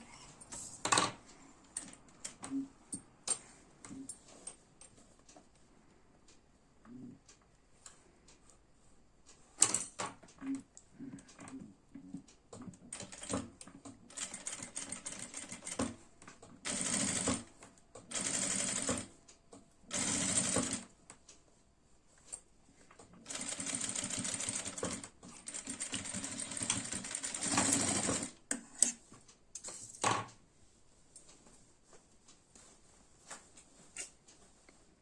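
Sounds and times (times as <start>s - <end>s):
sewing machine stitching: 16.6s - 17.5s, 18.1s - 19.2s, 19.9s - 20.9s, 23.2s - 28.4s.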